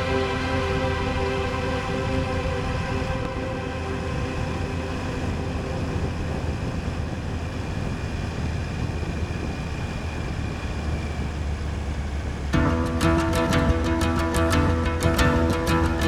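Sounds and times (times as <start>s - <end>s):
background music: 0.0s - 7.5s, 12.5s - 16.0s
wind and road noise: 0.0s - 16.0s.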